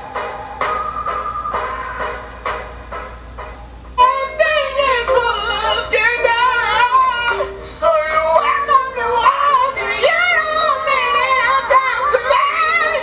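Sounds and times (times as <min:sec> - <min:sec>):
soft keyboard accompaniment: 0:01.6 - 0:13.0
person singing soulful melody: 0:04.0 - 0:13.0.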